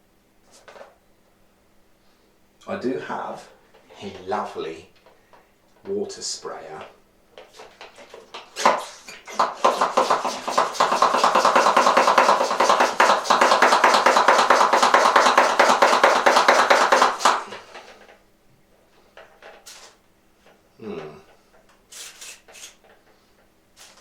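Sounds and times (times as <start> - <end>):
water sprayer squirting: 8.6 - 17.6, 21.9 - 23.0, 23.8 - 24.0.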